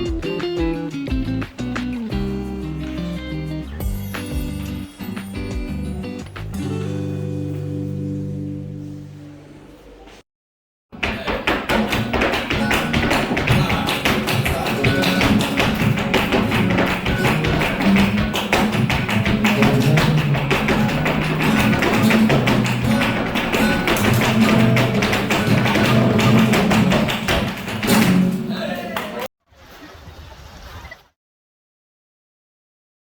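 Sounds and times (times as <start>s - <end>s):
flamenco music: 0.0s - 9.2s, 11.0s - 29.2s
rapid tapping: 11.0s - 28.5s.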